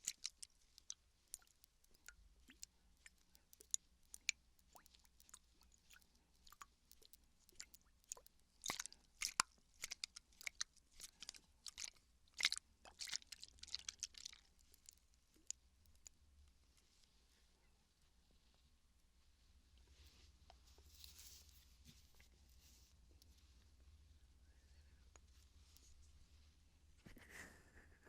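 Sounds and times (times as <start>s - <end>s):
water bottle crinkling and clicking: 6.4s - 15.6s.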